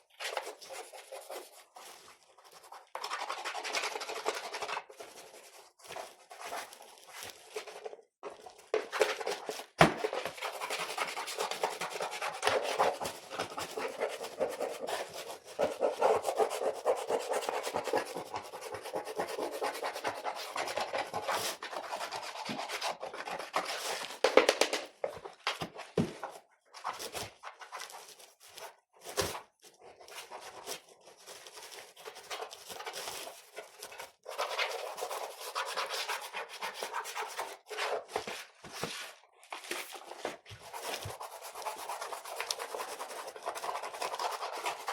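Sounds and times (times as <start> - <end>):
scrubbing on computer keyboard: 40.7 - 44.9.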